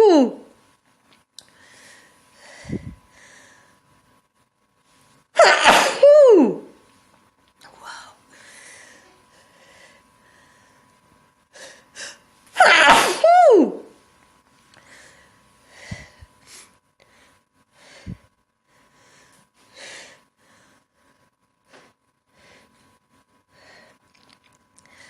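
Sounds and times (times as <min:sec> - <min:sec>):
person breathing: 0:01.5 - 0:03.9, 0:07.8 - 0:10.9, 0:14.8 - 0:21.2, 0:22.3 - 0:24.0
person sneezing: 0:05.4 - 0:06.7, 0:12.6 - 0:13.9.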